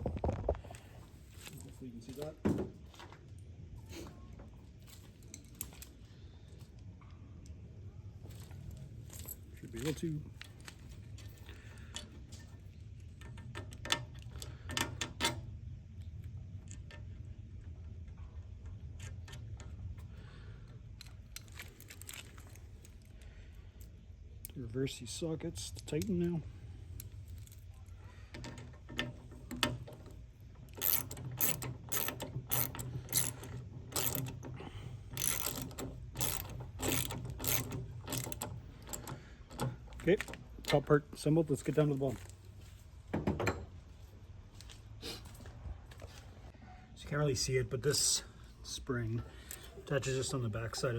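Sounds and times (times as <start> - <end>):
hand tools and metal parts clicking: 4.9 - 6.0, 8.4 - 15.5, 18.6 - 24.6, 25.7 - 42.4, 49.4 - 50.9
ratchet wrench clicking: 30.7 - 40.0.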